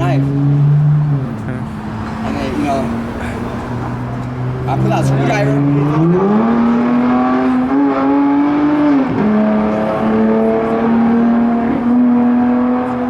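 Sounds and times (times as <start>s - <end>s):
vehicle engine revving: 0.0s - 13.0s.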